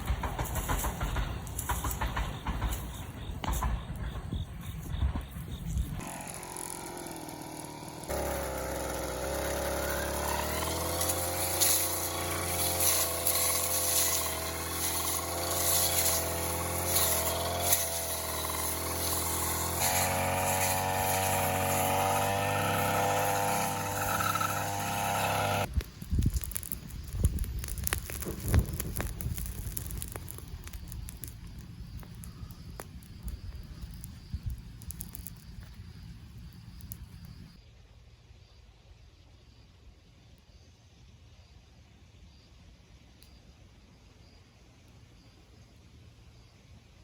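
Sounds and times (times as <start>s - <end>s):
small engine running: 5.9s - 25.7s.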